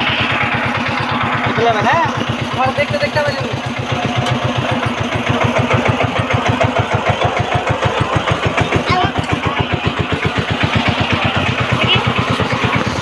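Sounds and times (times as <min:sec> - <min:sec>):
small engine chugging: 0:00.0 - 0:13.0.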